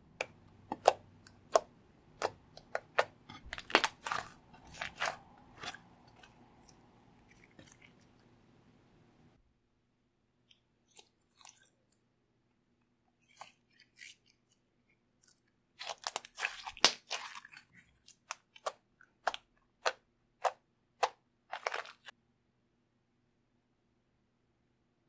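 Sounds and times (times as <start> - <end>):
slime popping: 0.7 - 7.8, 15.8 - 17.7
slime crackling: 0.7 - 8.1, 15.2 - 19.5, 21.5 - 22.1.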